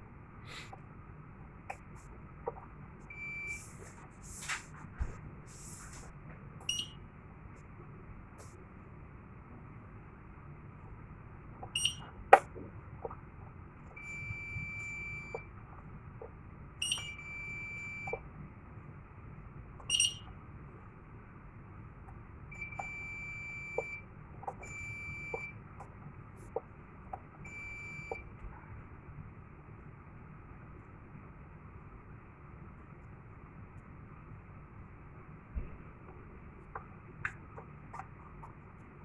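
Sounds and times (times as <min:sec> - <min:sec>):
alarm panel buzzer beeping: 0:06.7 - 0:07.0, 0:11.8 - 0:12.1, 0:16.8 - 0:18.1, 0:19.9 - 0:20.2.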